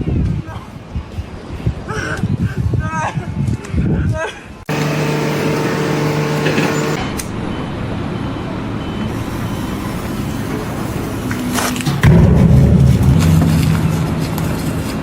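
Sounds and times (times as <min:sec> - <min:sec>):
steady tones: 0:04.7 - 0:07.1, 0:12.0 - 0:15.0
heavy engine running: 0:04.7 - 0:07.2, 0:11.8 - 0:15.0.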